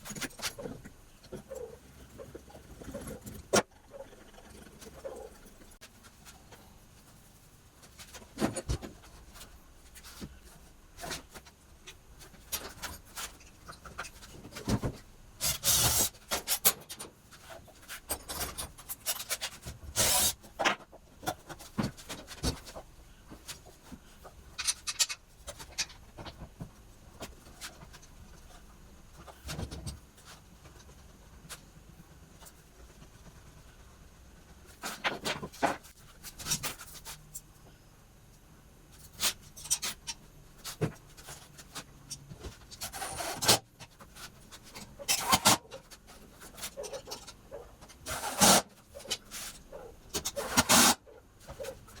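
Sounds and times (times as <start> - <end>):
clicks and knocks of parts: 7.8 - 31.7, 38.9 - 52.0.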